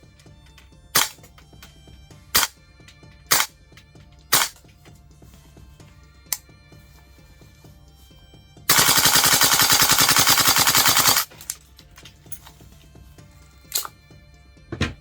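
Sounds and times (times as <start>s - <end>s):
rifle handling clicks: 4.4s - 4.7s, 13.7s - 13.9s
airsoft rifle automatic burst: 8.7s - 11.3s.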